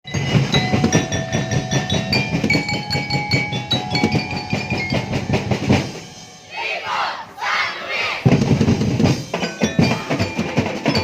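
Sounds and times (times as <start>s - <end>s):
ringing bell-like high notes: 0.1s - 6.5s, 9.2s - 11.0s
percussion band drumming: 0.1s - 7.1s, 8.1s - 11.0s
shrill wavering high sounds: 6.0s - 8.2s.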